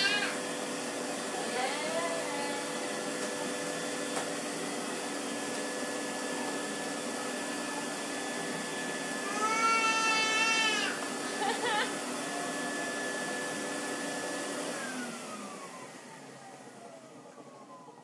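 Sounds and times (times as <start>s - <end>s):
cat meowing loudly: 0.0s - 0.4s, 9.3s - 11.0s
vacuum cleaner running: 0.0s - 18.0s.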